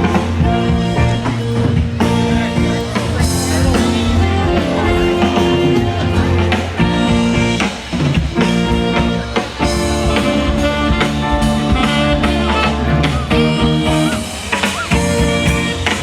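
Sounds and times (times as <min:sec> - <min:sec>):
band music with guitar and drums: 0:00.0 - 0:16.0.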